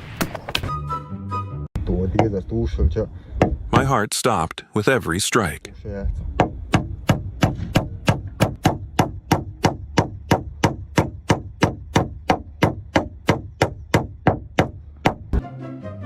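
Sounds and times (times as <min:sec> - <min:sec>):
hammer strikes: 0:03.4 - 0:04.0, 0:06.4 - 0:15.4.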